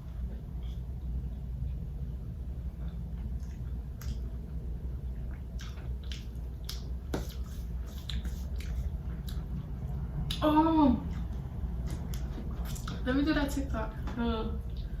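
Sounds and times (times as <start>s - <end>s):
chewing with wet mouth clicks: 2.7s - 10.4s, 11.0s - 13.1s.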